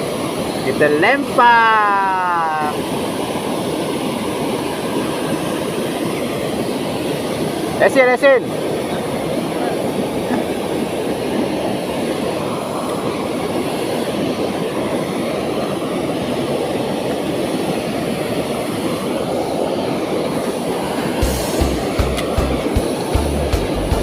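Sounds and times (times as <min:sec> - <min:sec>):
waterfall roaring: 0:00.0 - 0:24.0
low thumps and clicks: 0:21.2 - 0:24.0.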